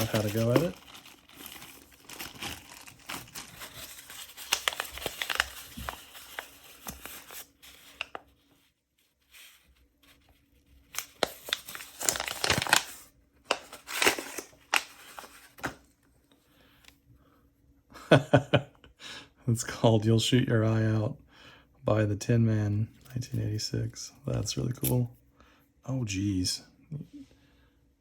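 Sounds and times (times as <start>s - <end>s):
packaging crinkling and tearing: 0.0s - 8.3s, 10.8s - 15.8s.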